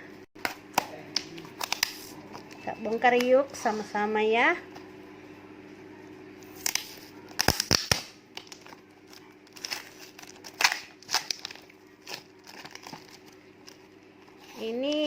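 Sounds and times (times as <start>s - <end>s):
packaging tearing and crinkling: 6.5s - 13.9s.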